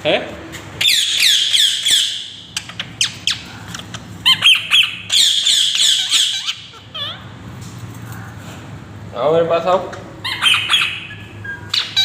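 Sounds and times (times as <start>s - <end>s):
parrot squawking: 0.8s - 7.4s, 10.2s - 12.0s.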